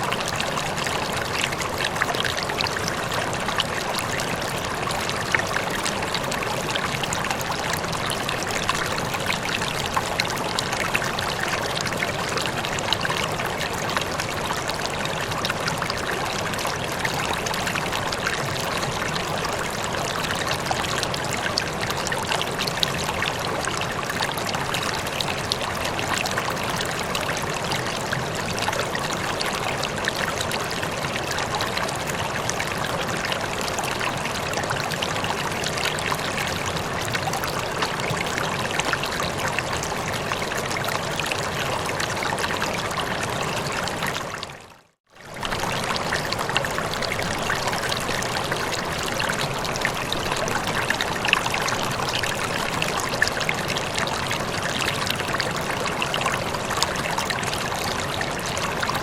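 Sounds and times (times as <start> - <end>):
water flowing and splashing: 0.0 - 59.0.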